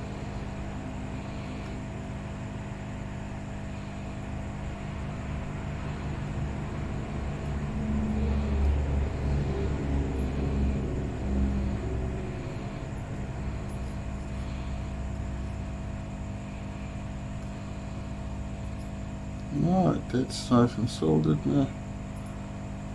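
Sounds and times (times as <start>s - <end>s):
electrical hum: 0.0s - 22.9s
low rumble: 6.0s - 16.5s.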